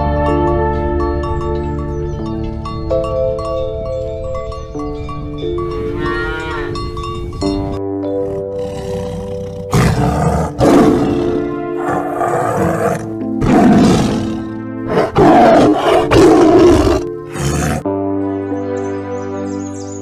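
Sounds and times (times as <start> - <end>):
background piano music: 0.0 - 20.0
large animal roaring: 8.2 - 17.8.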